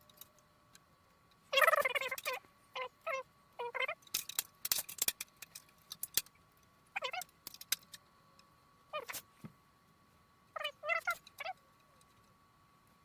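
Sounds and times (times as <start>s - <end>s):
pitched animal cries: 10.6s - 11.6s.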